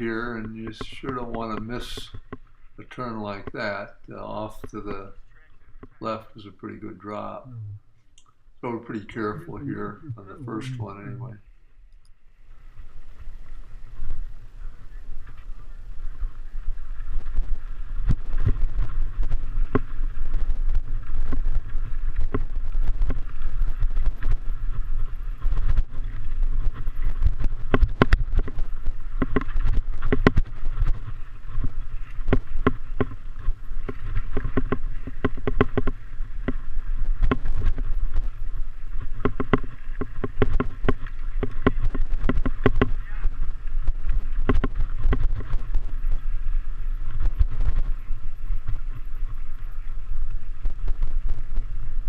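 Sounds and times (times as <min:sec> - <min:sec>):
wind rumble on microphone: 0:12.4 - 0:52.0
bike rattling over rocks: 0:16.2 - 0:52.0.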